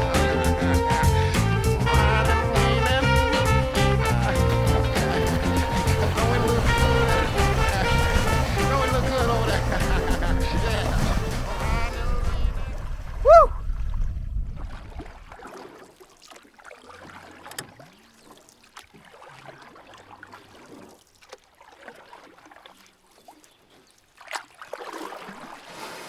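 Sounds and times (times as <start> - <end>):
song ending with loud note: 0.0 - 11.9
lake water splashing: 0.0 - 26.0.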